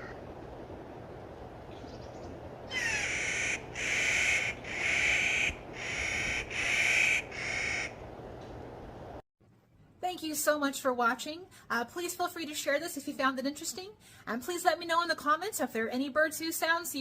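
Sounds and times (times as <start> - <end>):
bird giving loud grating calls: 2.7 - 8.0.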